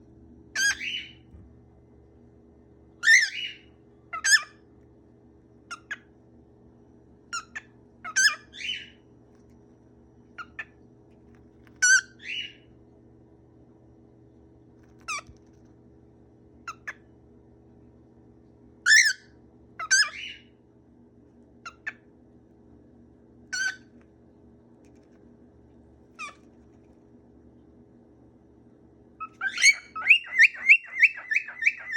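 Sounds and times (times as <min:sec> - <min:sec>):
pet bird calling: 0:00.6 - 0:01.2, 0:03.0 - 0:03.6, 0:07.4 - 0:09.0, 0:11.8 - 0:12.6, 0:19.8 - 0:20.5, 0:29.2 - 0:31.9.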